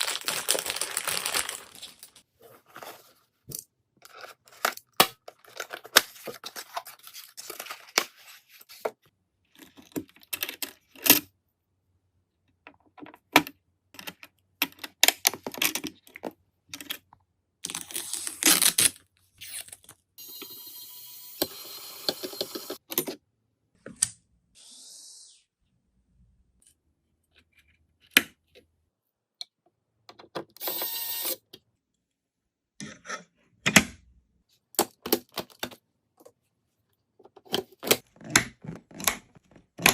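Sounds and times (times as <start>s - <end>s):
packaging rustling and tearing: 0.0s - 3.1s
clicks and knocks of handling: 37.2s - 39.9s.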